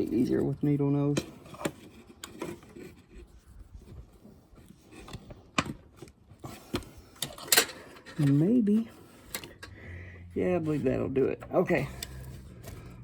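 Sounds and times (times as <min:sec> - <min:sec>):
pliers rubbing and handling: 0:11.4 - 0:13.0.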